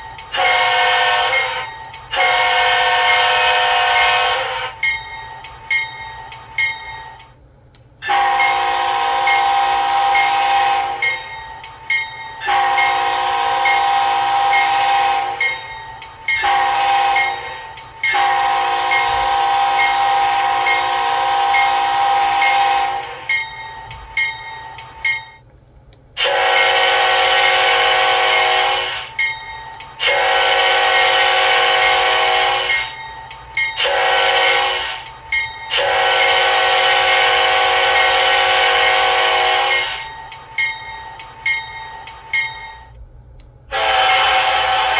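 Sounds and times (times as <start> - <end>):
locomotive bell ringing: 0.0 - 7.4, 8.0 - 25.4, 26.2 - 43.0, 43.7 - 44.9
locomotive air horn blasts: 0.4 - 4.7, 8.0 - 11.0, 12.4 - 15.4, 16.3 - 17.5, 18.1 - 23.0, 26.2 - 29.0, 30.0 - 32.8, 33.8 - 35.0, 35.7 - 40.0, 43.7 - 44.9.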